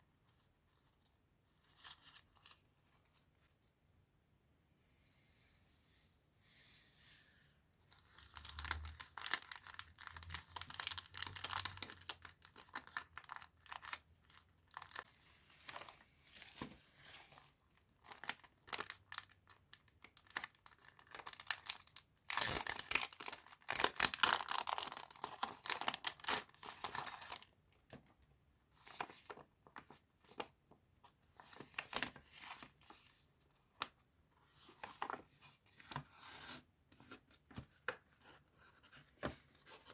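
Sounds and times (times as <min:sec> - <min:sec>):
packaging crinkling and tearing: 0:08.2 - 0:15.1, 0:18.0 - 0:27.5.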